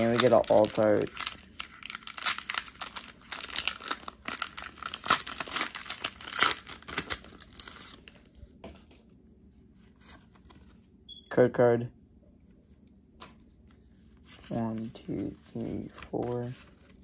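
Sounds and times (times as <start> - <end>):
foil wrapper tearing and crinkling: 0.0 - 8.3.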